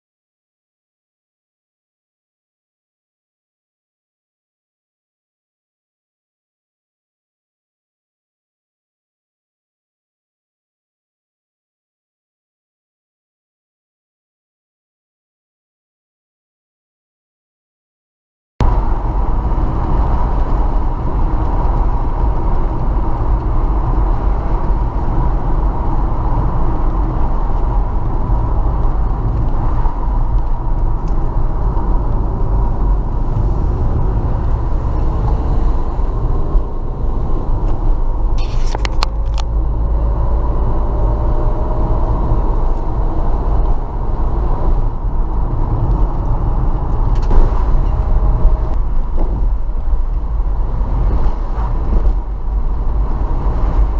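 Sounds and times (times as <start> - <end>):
car road rumble: 18.6 - 53.9.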